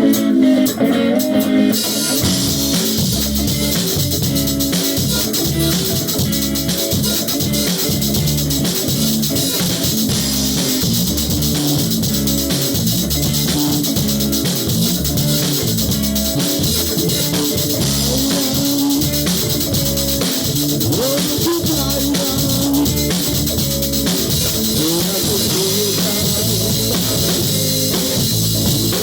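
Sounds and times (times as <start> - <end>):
drums and percussion: 0.0 - 29.0
guitar: 0.0 - 29.0.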